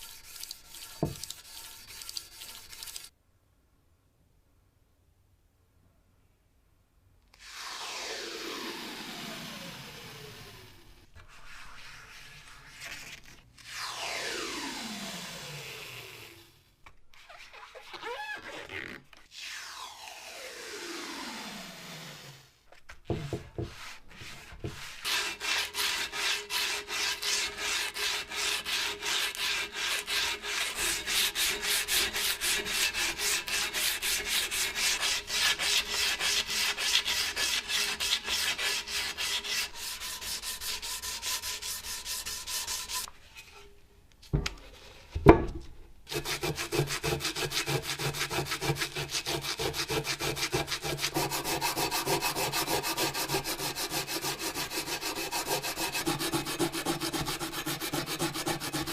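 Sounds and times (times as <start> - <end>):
hand sanding strokes: 0.0 - 3.1, 23.1 - 43.1, 46.1 - 58.9.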